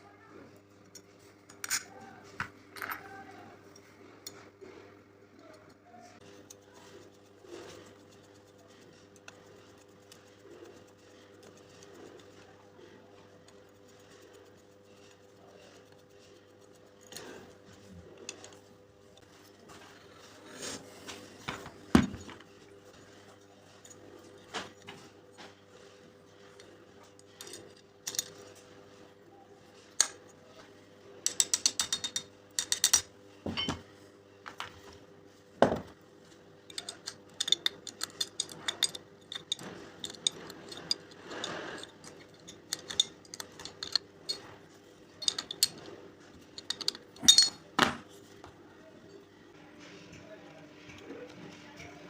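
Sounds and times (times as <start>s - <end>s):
metal tools clattering: 36.7s - 44.6s, 45.2s - 45.9s, 46.5s - 47.7s.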